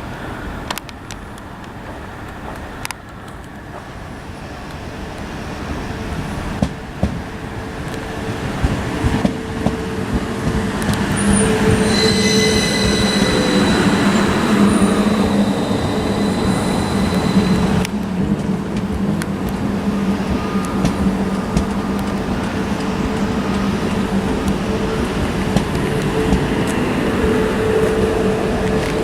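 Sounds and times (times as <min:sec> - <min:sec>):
electric train approaching: 0:01.3 - 0:29.0
high whine: 0:09.4 - 0:29.0.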